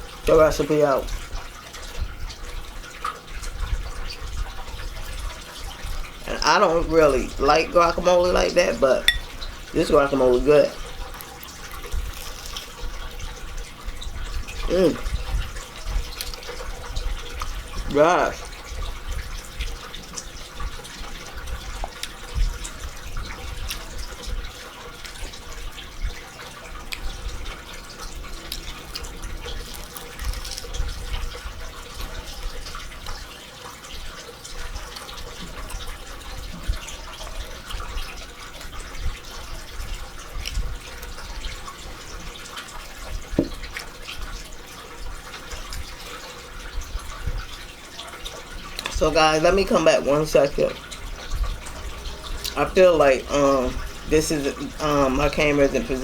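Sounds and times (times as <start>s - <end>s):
person chewing food: 10.8s - 13.6s, 14.2s - 33.3s, 34.0s - 48.9s, 50.8s - 52.7s.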